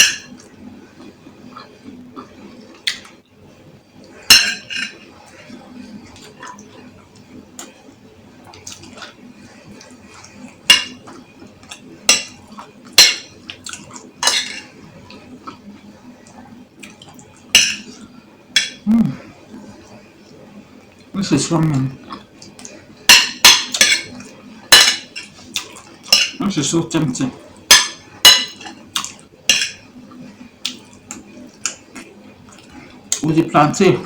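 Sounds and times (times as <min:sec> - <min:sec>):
spoon clinking against a bowl: 0:04.3 - 0:05.0, 0:13.0 - 0:13.4, 0:14.2 - 0:14.7, 0:17.6 - 0:18.0, 0:23.1 - 0:25.3, 0:26.0 - 0:26.4, 0:27.7 - 0:28.7, 0:29.5 - 0:29.9.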